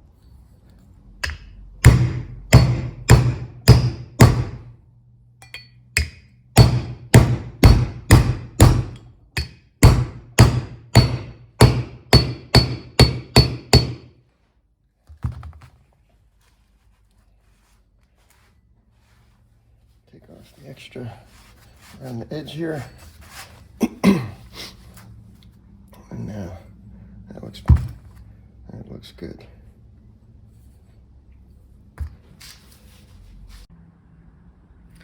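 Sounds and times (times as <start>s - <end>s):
hammer striking metal socket: 1.2s - 4.6s, 5.4s - 14.1s.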